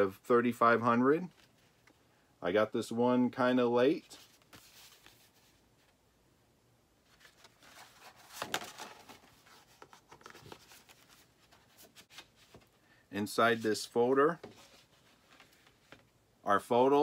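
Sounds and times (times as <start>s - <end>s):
paper folder rustling: 4.1s - 5.9s, 7.0s - 12.8s, 13.8s - 16.2s.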